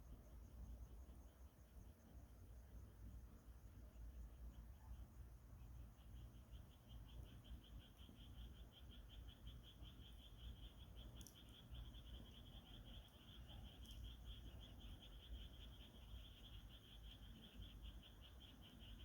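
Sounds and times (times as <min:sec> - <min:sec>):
insect chirping: 0:00.0 - 0:19.0
faint clicks: 0:10.9 - 0:14.7.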